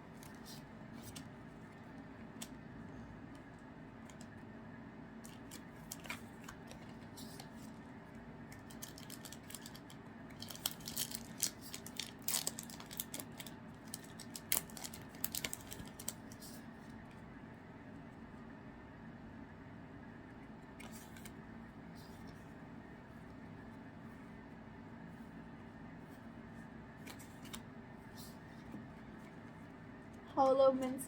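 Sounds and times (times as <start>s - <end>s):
cards and packaging crinkling: 8.6s - 16.4s.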